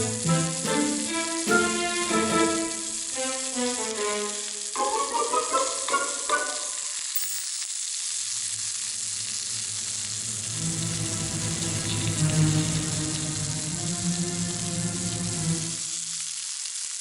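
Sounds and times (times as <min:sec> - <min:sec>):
background music: 0:00.0 - 0:06.8, 0:10.4 - 0:16.0
food sizzling in a pan: 0:00.0 - 0:14.6, 0:15.3 - 0:17.0.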